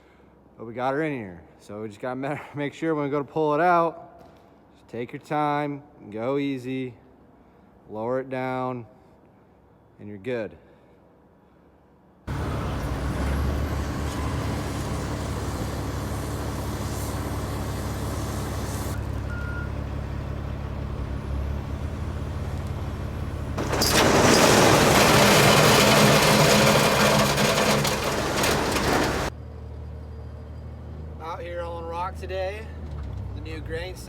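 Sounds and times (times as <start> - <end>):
heavy truck engine running: 12.3 - 29.6.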